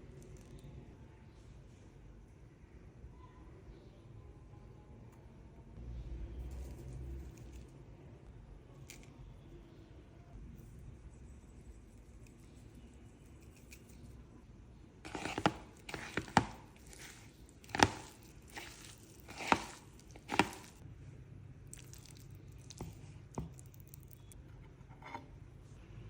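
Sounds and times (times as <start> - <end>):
knife chopping on cutting board: 15.1 - 20.8.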